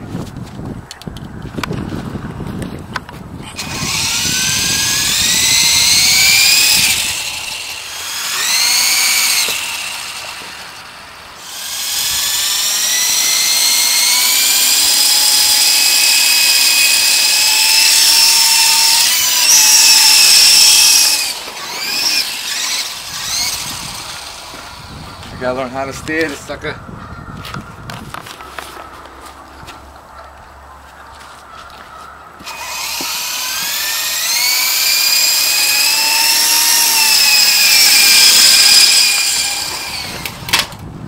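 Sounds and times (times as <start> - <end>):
model helicopter motor whining: 3.4 - 26.5, 32.4 - 40.8.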